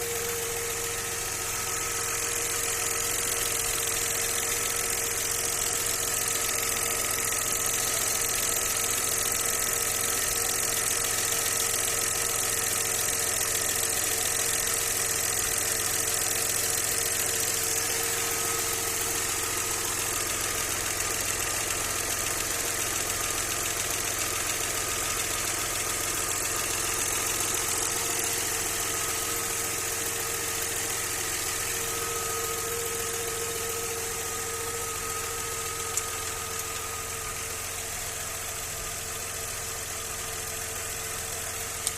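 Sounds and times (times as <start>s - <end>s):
car engine idling: 0.0s - 41.9s
engine whine: 27.0s - 38.8s.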